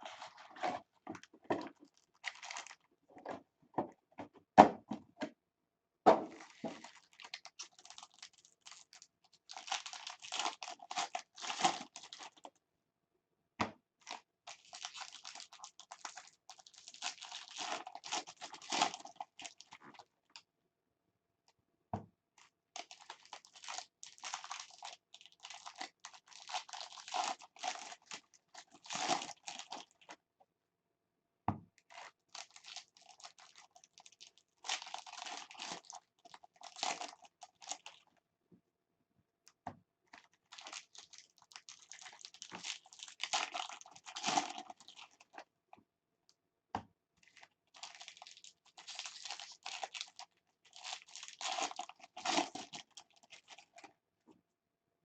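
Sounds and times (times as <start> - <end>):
foil wrappers crinkling and tearing: 6.4 - 12.4, 14.5 - 19.8, 22.8 - 30.0, 31.9 - 38.0, 40.5 - 45.4, 47.2 - 53.9.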